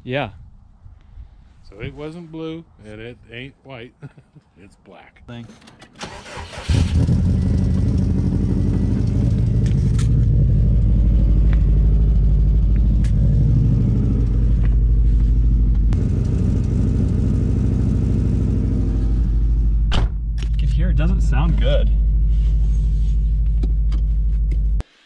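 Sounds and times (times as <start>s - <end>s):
car engine running rough: 6.6s - 24.8s.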